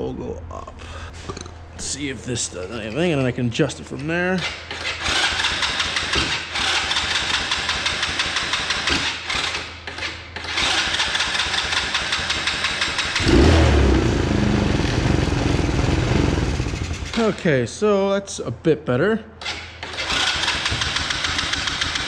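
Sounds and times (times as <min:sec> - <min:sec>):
engine cranking and starting: 0:04.4 - 0:17.3, 0:19.4 - 0:22.0.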